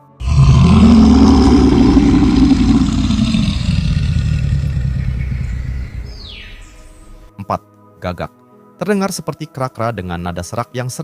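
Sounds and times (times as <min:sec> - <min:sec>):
bear growling: 0:00.0 - 0:07.3.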